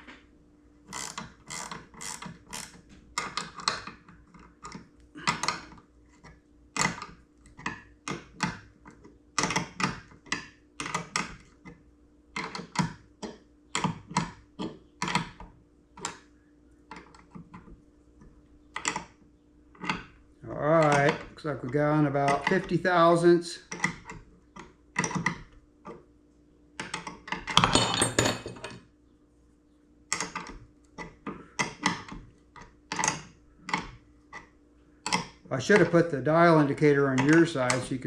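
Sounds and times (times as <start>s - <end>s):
faint steady hum: 0.0s - 38.0s
jig tightening clicks: 0.9s - 11.8s.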